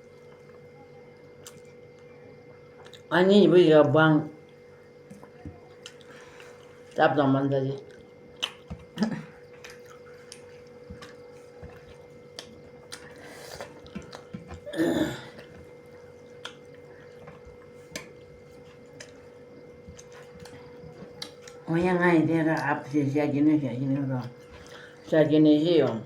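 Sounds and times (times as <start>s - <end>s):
chewing mouth noises: 7.8s - 14.6s, 16.1s - 17.6s.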